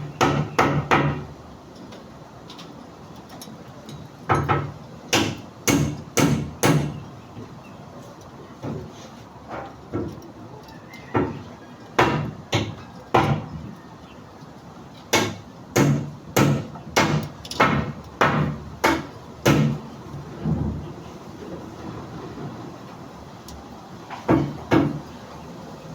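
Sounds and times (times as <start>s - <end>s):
hammer strikes: 0.0s - 1.3s, 4.3s - 7.0s, 12.0s - 13.5s, 15.1s - 19.8s.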